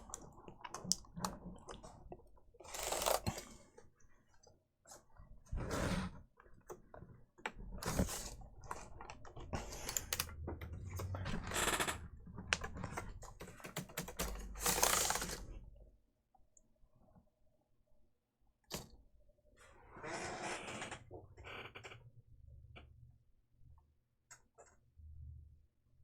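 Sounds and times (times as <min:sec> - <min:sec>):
plastic keyboard clicks: 0:02.7 - 0:03.5, 0:09.6 - 0:15.5.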